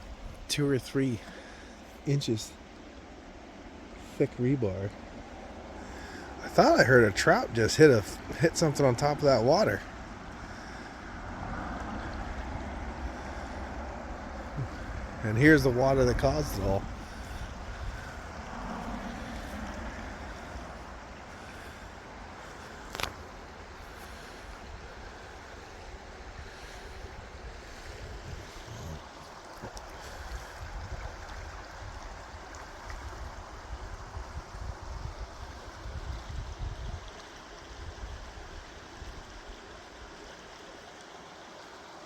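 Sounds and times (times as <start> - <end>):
stream water rushing: 0.0 - 42.0
wind rumbling on microphone: 9.1 - 39.6
low rumble on microphone: 26.4 - 32.3.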